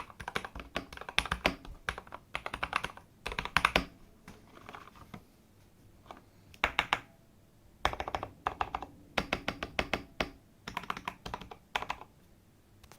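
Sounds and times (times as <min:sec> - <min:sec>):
mechanical keyboard typing: 0:00.0 - 0:03.9, 0:06.6 - 0:07.1, 0:07.8 - 0:12.1.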